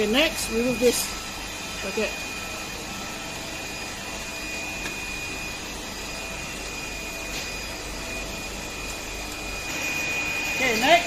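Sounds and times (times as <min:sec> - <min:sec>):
fan or motor whirring hum: 0:00.0 - 0:11.0.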